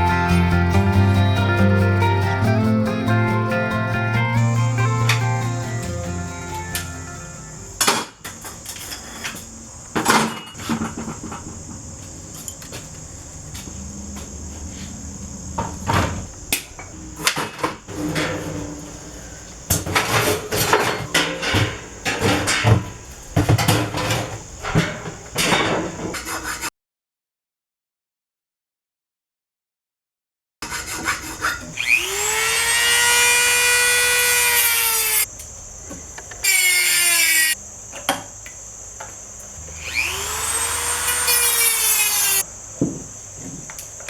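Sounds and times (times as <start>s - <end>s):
metallic clanks and clatter: 17.2s - 19.0s, 19.7s - 26.2s.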